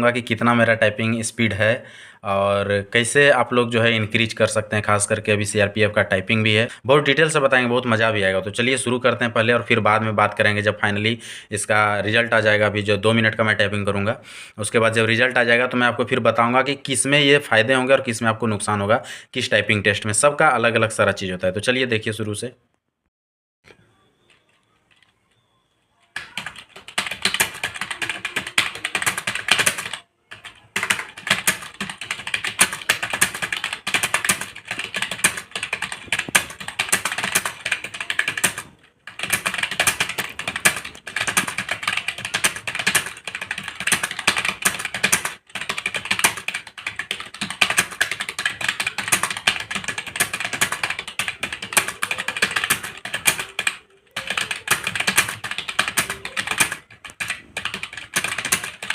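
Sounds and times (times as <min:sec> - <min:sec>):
fast keyboard typing: 0:26.1 - 0:58.9.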